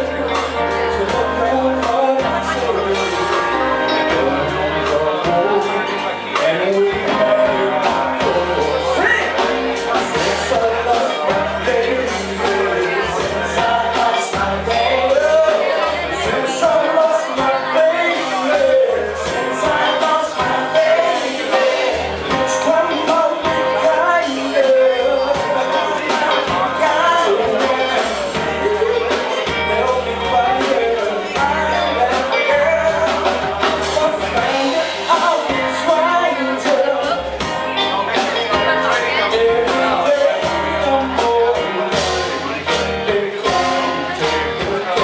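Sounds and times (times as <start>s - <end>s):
lead vocal singing: 0.0s - 45.0s
live band playing soul song: 0.0s - 45.0s.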